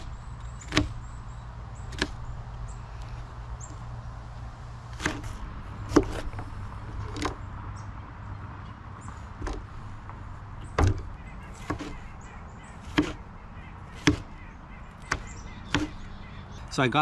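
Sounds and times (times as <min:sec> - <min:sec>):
knife chopping on board: 0:11.6 - 0:12.0, 0:12.8 - 0:13.2, 0:13.9 - 0:14.4, 0:15.0 - 0:16.1.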